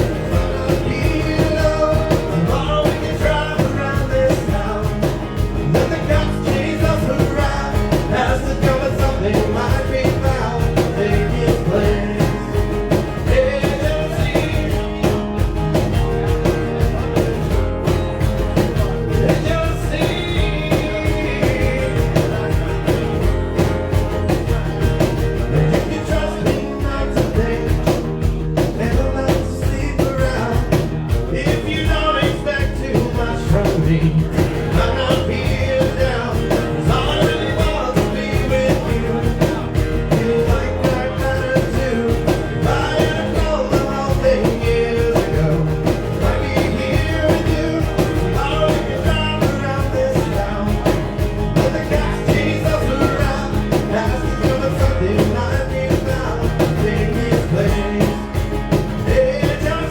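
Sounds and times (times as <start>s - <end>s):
person singing: 0.0s - 16.1s, 18.6s - 59.9s
live rock band playing: 0.0s - 59.9s
steady drum beat: 0.0s - 59.9s.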